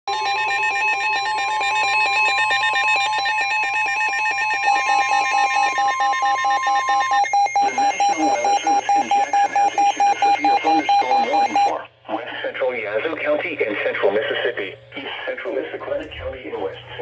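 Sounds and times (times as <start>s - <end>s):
fast electronic alert beeps: 0.1s - 11.7s
steady warning alarm tone: 0.1s - 11.7s.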